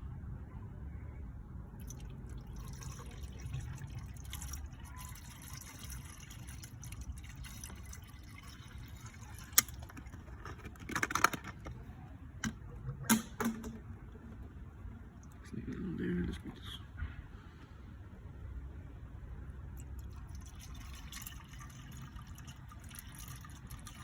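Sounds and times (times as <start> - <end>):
liquid trickling into reservoir: 1.7 - 11.6, 19.7 - 24.0.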